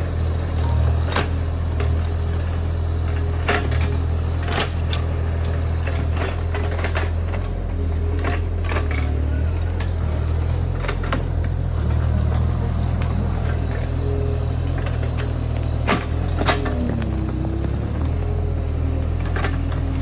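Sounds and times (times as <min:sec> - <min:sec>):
diesel engine running: 0:00.0 - 0:20.0.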